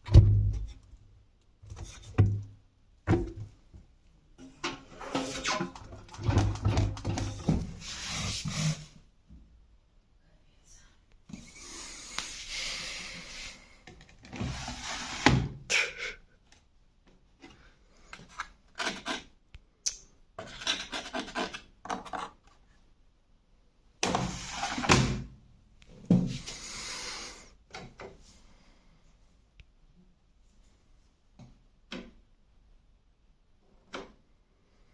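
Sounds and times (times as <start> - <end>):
rubbing and scraping handling noise: 1.7 - 3.8, 4.4 - 9.1, 11.3 - 15.5, 17.3 - 19.4, 20.4 - 22.9, 24.0 - 25.1.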